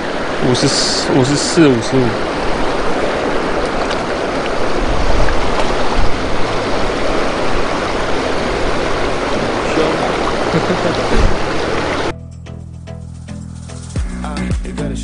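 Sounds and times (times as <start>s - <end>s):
stream flowing over rocks: 0.0s - 12.1s
low bumps: 3.4s - 12.1s.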